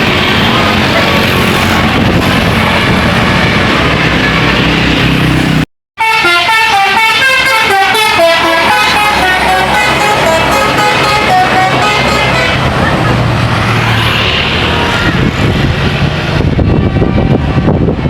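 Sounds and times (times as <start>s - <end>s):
tour bus passing: 0.0s - 18.0s
multi-note bus horn melody: 6.0s - 12.8s.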